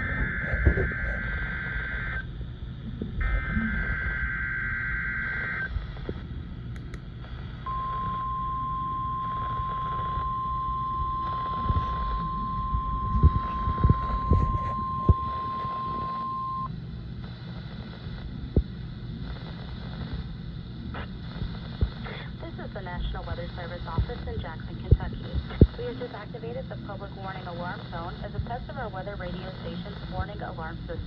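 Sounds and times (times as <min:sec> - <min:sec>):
warbling digital data burst: 0:00.0 - 0:02.3
steady single-pitch alarm tone: 0:00.0 - 0:02.4, 0:03.2 - 0:05.8, 0:07.6 - 0:16.7.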